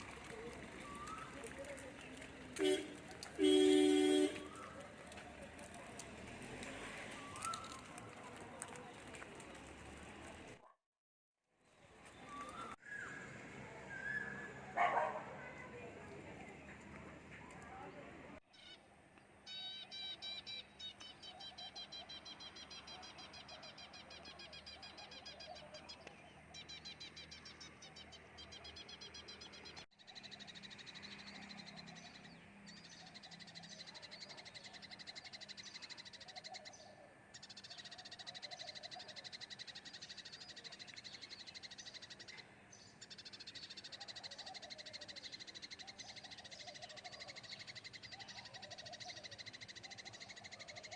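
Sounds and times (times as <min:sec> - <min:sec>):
birds chirping and trilling: 0:18.5 - 0:50.9.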